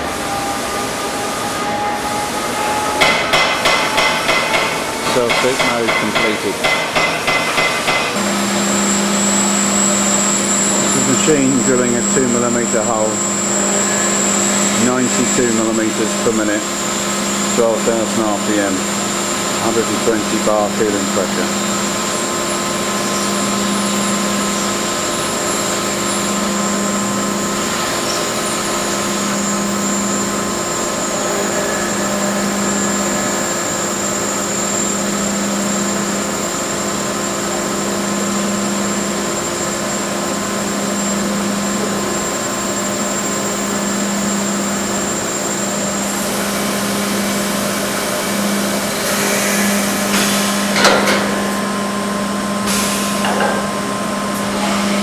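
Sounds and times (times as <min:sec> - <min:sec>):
drilling machine hum: 0:00.0 - 0:55.0
high whine: 0:00.0 - 0:55.0.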